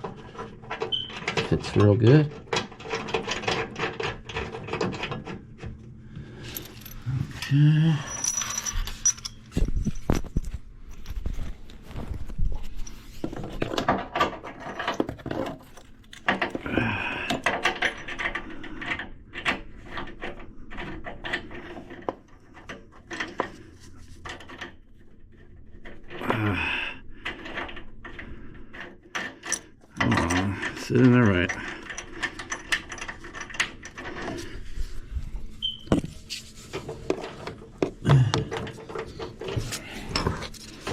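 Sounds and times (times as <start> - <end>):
metal fittings clinking: 6.4 - 10.2
person grunting: 7.0 - 8.2, 16.6 - 17.4, 26.2 - 27.0, 38.0 - 38.5.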